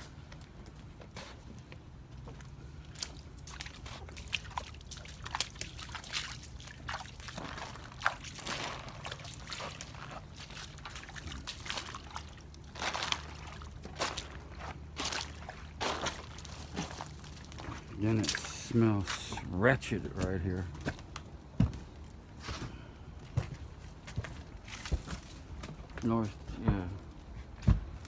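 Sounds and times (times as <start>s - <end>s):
steady low hum: 0.0s - 28.0s
wet mud squelching: 2.1s - 21.1s, 23.8s - 26.9s.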